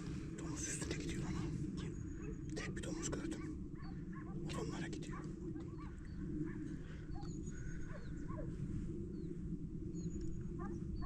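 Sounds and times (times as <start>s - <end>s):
dogs barking: 2.1s - 8.6s, 10.6s - 11.0s.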